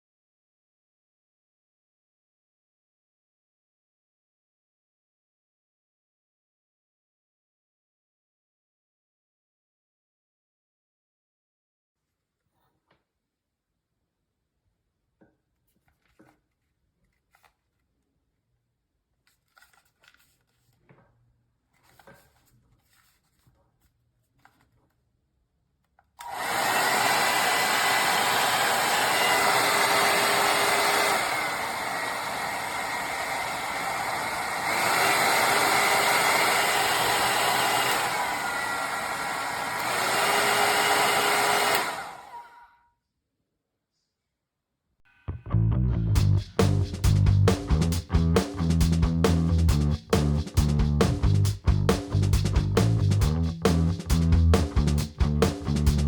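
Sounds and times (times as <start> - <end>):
hot air brush fan whooshing: 26.2 - 42.5.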